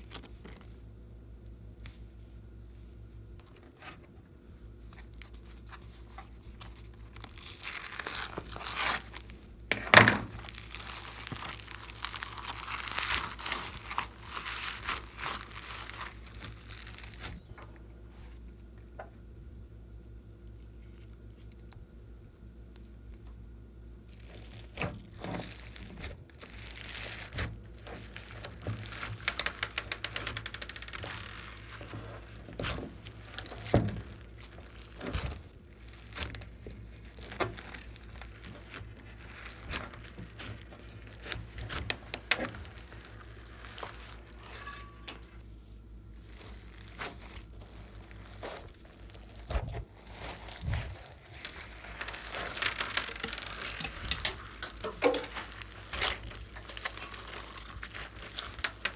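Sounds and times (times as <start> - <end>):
slime squishing and popping: 4.8 - 17.5, 24.1 - 45.3, 46.2 - 58.9.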